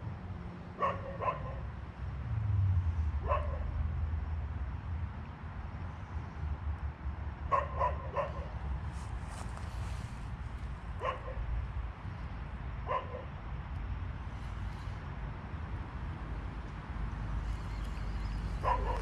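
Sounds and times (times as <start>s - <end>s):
dog barking: 0.8s - 1.6s, 3.2s - 3.7s, 7.5s - 8.6s, 11.0s - 11.4s, 12.8s - 13.3s, 18.6s - 19.0s.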